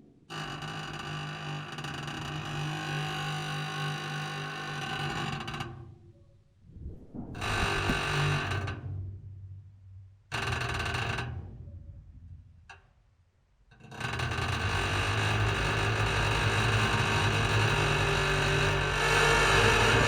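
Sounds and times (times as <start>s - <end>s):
deep metallic drone: 6.6s - 10.3s, 14.7s - 20.0s
deep metallic groan: 6.7s - 9.4s, 13.9s - 20.0s.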